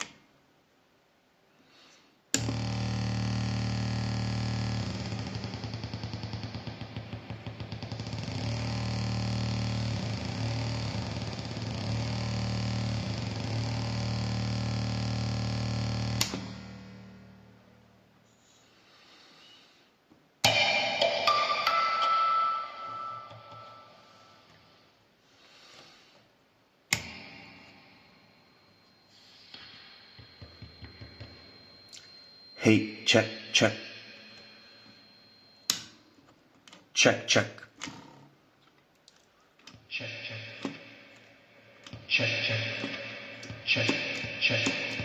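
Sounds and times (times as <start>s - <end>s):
harsh synth drone: 2.4s - 17.5s, 39.9s - 45.0s
metal spring twang: 20.4s - 22.0s.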